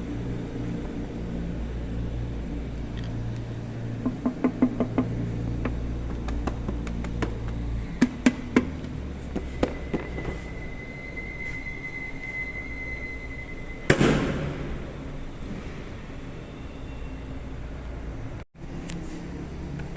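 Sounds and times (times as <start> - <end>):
low engine running note: 0.0 - 16.7
thin steady whine: 0.0 - 18.8
loud sudden bang: 13.9 - 14.9.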